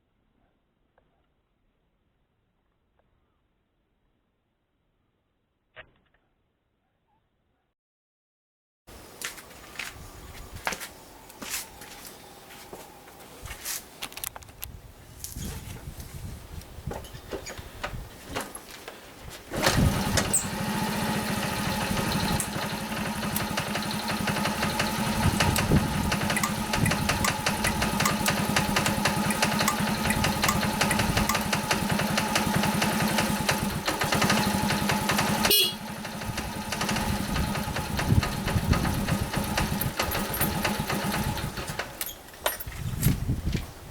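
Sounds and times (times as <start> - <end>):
small motorcycle engine running: 19.5 - 42.0.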